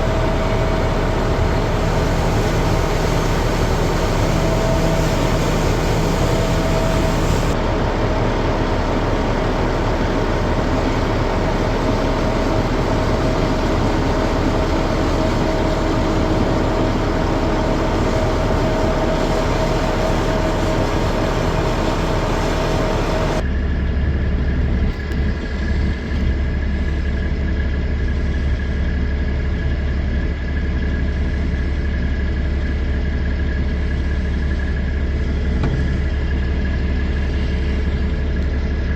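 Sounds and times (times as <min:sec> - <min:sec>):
heavy engine idling: 0:00.0 - 0:38.9
truck engine and road noise: 0:00.0 - 0:38.9.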